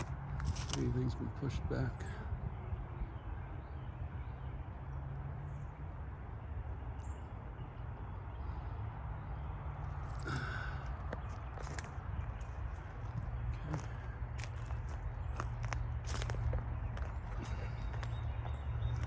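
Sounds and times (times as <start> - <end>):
footsteps in dry leaves: 0.0 - 0.9, 10.3 - 19.0
wind rumble on microphone: 0.0 - 4.6.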